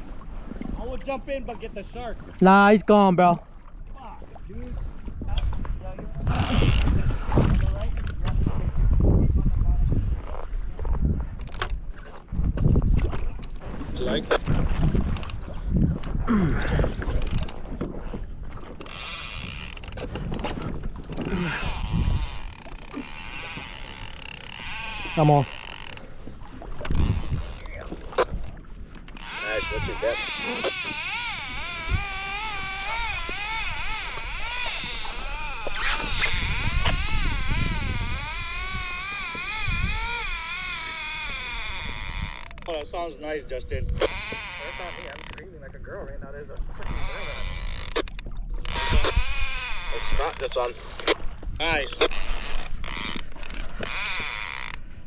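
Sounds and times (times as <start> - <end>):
wind noise on microphone: 4.3 - 55.0
fishing reel ratcheting: 6.3 - 7.0, 11.4 - 11.8, 17.1 - 17.6, 18.8 - 27.7, 29.1 - 42.8, 44.0 - 45.4, 46.8 - 51.2, 52.0 - 54.8.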